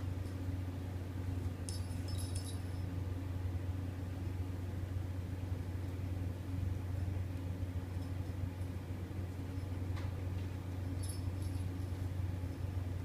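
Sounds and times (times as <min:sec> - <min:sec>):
steady low hum: 0:00.0 - 0:13.0
metallic jingle: 0:01.6 - 0:03.0, 0:10.8 - 0:12.6.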